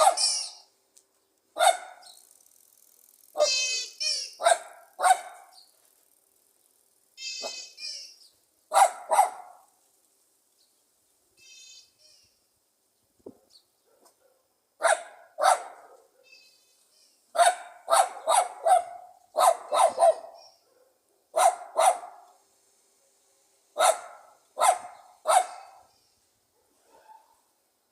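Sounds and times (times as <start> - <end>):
dog barking: 0.0 - 0.5, 1.6 - 2.1, 3.4 - 3.6, 4.4 - 5.6, 7.4 - 7.7, 8.7 - 9.7, 13.8 - 16.4, 17.4 - 22.3, 23.8 - 25.9, 26.6 - 27.4.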